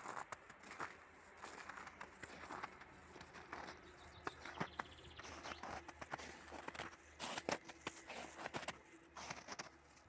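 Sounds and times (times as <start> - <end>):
footsteps on snow: 0.0 - 10.0.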